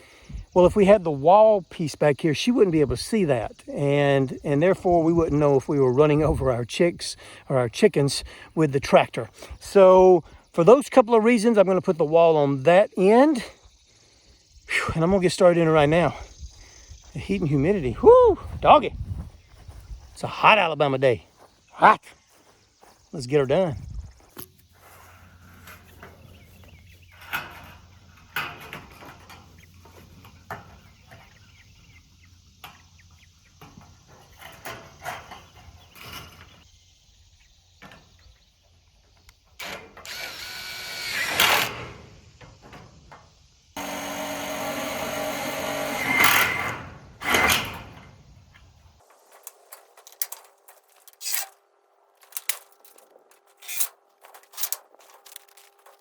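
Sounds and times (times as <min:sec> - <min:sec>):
power drill running: 0:40.0 - 0:41.9, 0:43.8 - 0:47.6.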